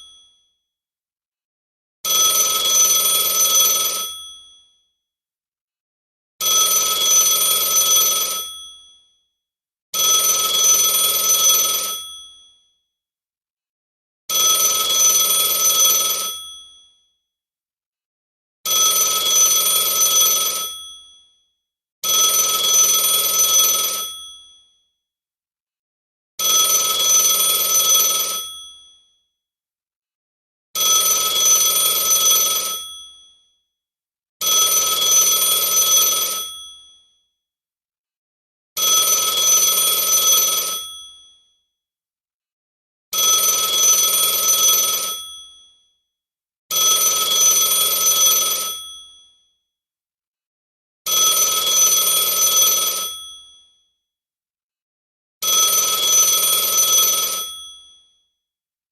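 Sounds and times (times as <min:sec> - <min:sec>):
telephone ringing: 0:14.4 - 0:16.5, 0:18.9 - 0:20.8, 0:22.5 - 0:24.2, 0:26.4 - 0:28.7, 0:30.8 - 0:33.0, 0:46.7 - 0:49.0, 0:51.3 - 0:53.4, 0:55.6 - 0:57.8.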